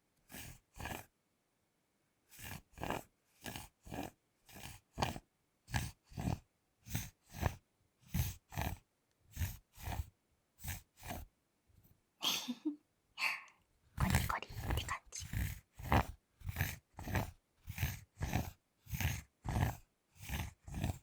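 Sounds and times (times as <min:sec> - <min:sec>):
fork scraping chocolate bar: 0:02.4 - 0:06.4, 0:09.4 - 0:11.3, 0:14.0 - 0:21.0.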